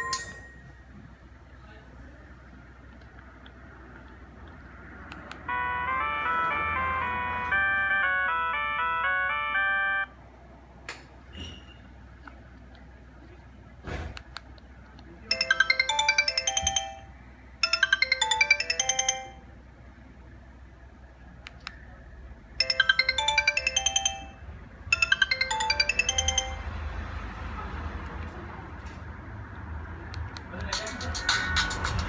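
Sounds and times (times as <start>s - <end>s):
steady background noise: 0.0s - 32.0s
mobile phone ringtone melody: 5.4s - 10.2s, 15.3s - 19.6s, 22.6s - 27.2s.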